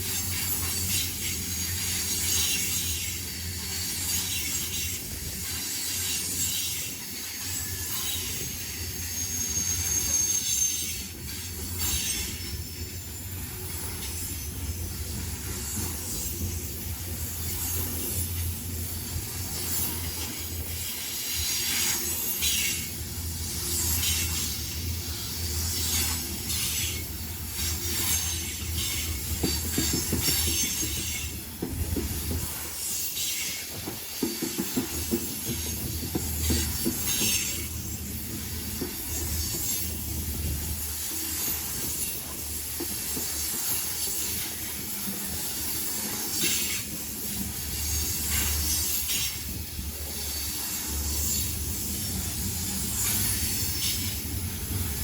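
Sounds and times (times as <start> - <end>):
freight train rumbling: 0.0 - 55.0
train wheels squealing: 0.0 - 55.0
wheels clacking over rail joints: 25.5 - 55.0.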